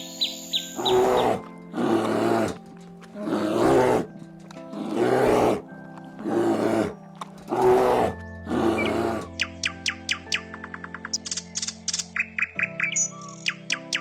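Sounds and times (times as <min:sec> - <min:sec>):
soft background music: 0:00.0 - 0:14.0
animal calling: 0:00.8 - 0:09.5.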